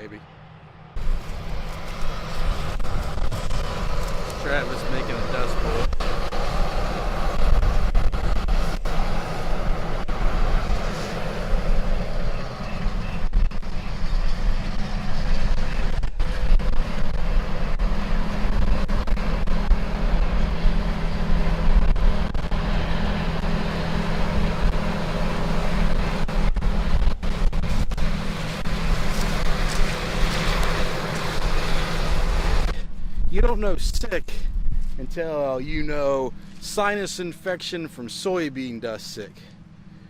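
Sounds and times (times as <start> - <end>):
diesel engine drone: 0.0 - 40.0.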